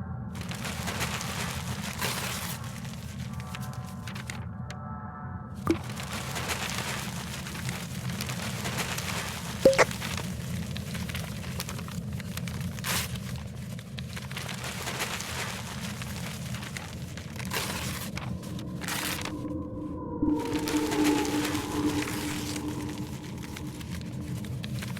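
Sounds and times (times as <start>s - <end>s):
low rumble: 16.7s - 24.9s.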